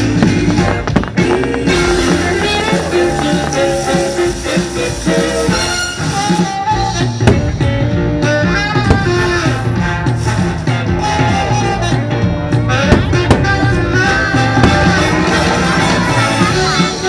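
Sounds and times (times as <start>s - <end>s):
instrumental music with steady beat: 0.0s - 17.0s.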